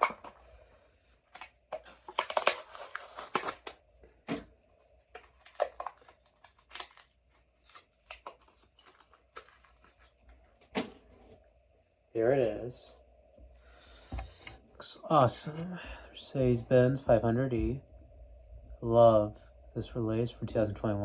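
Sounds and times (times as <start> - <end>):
card tearing: 0.0 - 0.4, 1.2 - 4.5, 5.2 - 11.0
plastic packaging crinkling: 0.0 - 0.5, 1.2 - 11.0.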